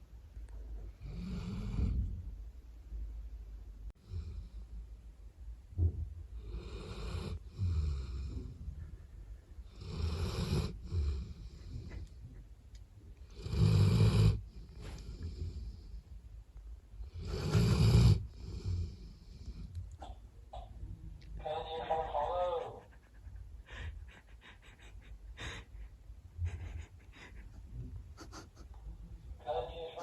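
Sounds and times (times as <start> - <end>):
dog snoring: 1.0 - 2.3, 4.0 - 4.7, 6.4 - 8.8, 9.6 - 12.1, 13.2 - 16.0, 17.0 - 19.7.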